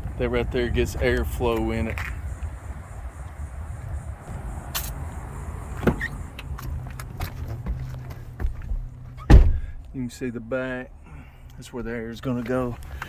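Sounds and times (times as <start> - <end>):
loud thump: 5.8 - 6.1, 8.4 - 9.9.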